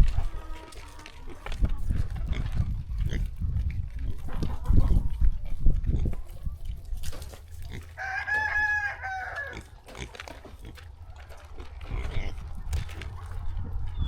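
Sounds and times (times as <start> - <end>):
rooster crowing: 8.0 - 9.6.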